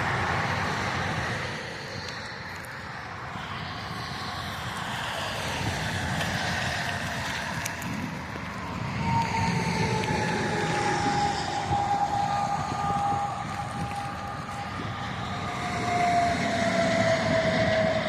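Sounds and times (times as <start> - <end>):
vehicle engine and road noise: 0.0 - 18.0
thin high whine: 6.5 - 18.0.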